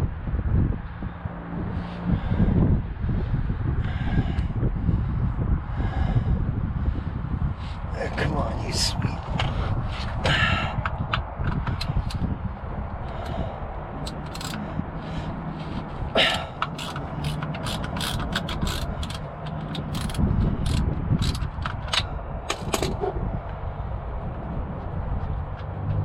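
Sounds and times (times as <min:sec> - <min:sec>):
steady low hum: 0:00.0 - 0:26.0
ratchet wrench clicking: 0:14.1 - 0:14.6, 0:16.2 - 0:23.0.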